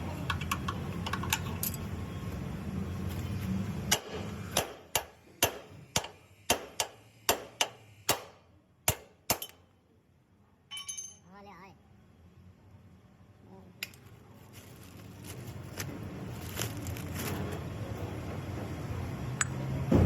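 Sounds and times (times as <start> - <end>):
hammer striking metal: 3.9 - 9.6.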